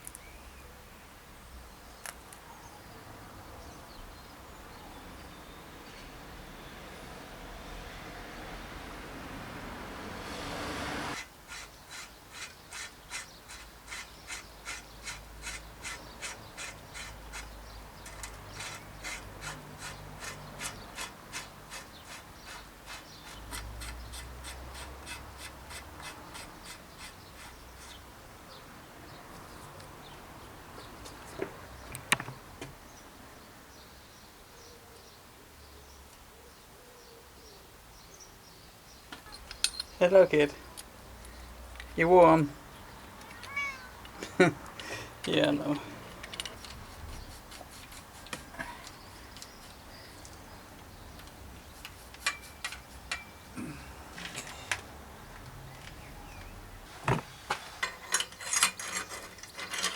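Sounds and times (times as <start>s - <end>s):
sharp knocks: 57.0s - 57.3s.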